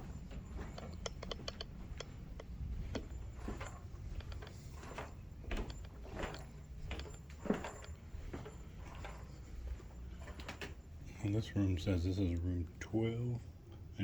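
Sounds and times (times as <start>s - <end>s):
light clicks and knocks: 0.0s - 10.8s.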